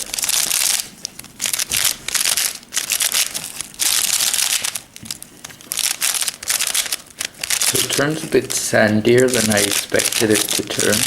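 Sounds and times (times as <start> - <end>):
plastic puzzle turning scratchily: 1.5 - 8.4, 9.1 - 11.0.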